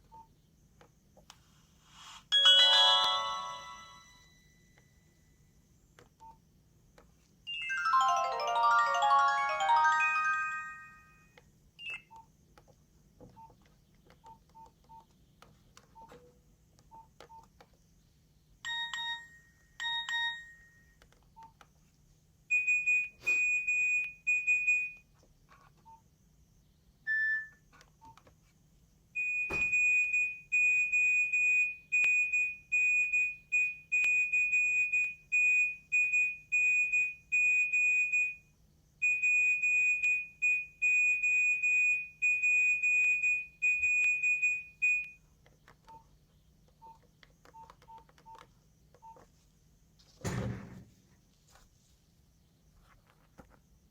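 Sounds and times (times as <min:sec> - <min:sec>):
phone ringtone melody: 0:02.3 - 0:04.7, 0:07.5 - 0:11.3, 0:18.7 - 0:20.7.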